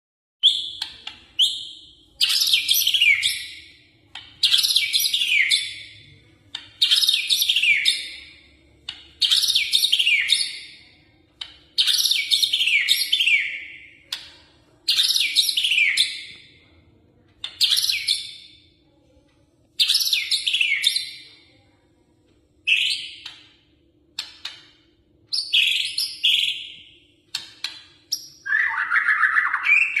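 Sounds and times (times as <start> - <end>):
bird singing whistled phrases: 28.3 - 30.0.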